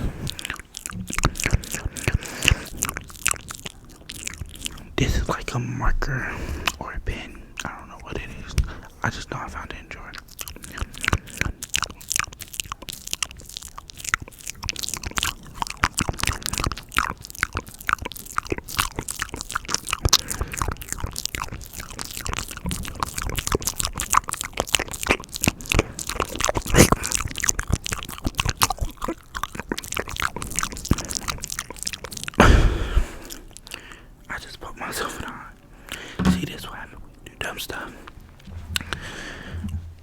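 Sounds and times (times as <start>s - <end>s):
wet mouth clicks and smacks: 0.0s - 40.0s.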